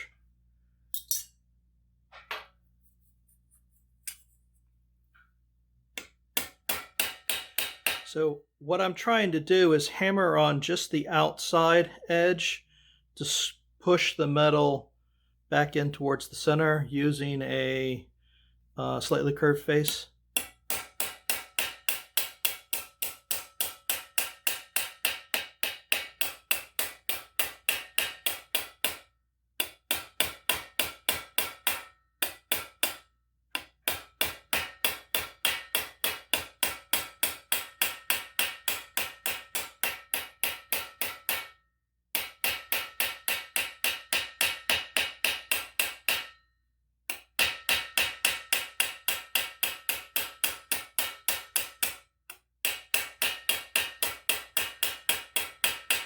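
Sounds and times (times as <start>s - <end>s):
hammer ringing on metal plate: 33.9s - 41.6s, 42.2s - 46.5s, 47.4s - 52.0s, 52.6s - 56.0s.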